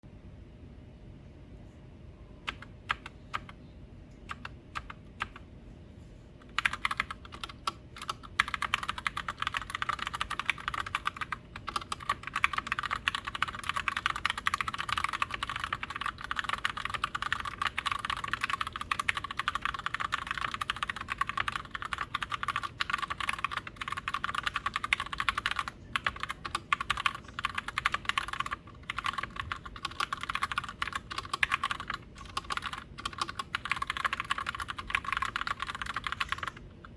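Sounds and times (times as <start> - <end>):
mechanical keyboard typing: 2.4 - 3.6, 4.3 - 5.4, 6.4 - 36.9.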